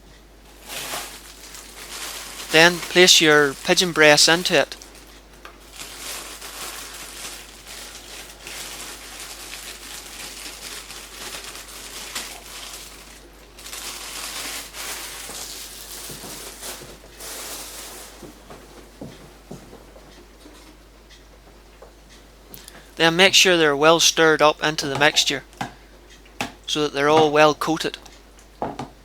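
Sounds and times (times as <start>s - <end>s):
rustling and crinkling: 0.4s - 20.8s.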